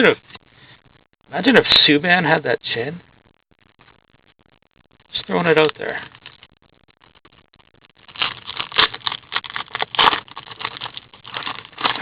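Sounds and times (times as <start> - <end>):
card pack crinkling and rustling: 8.0 - 12.0.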